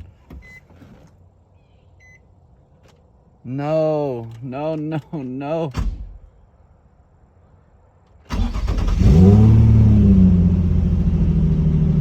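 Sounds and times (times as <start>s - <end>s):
car engine cranking and idling: 8.2s - 12.0s.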